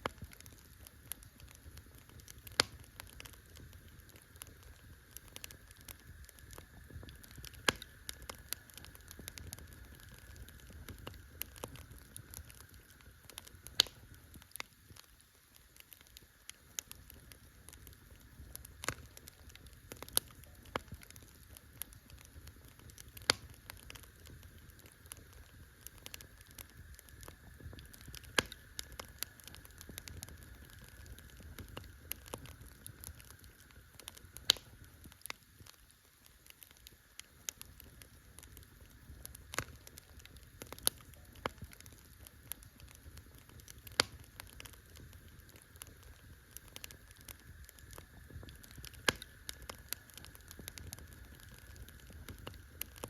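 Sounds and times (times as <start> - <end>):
sharp fire pops: 0.0 - 15.1, 15.8 - 35.8, 36.4 - 53.0
campfire crackling: 0.0 - 53.0.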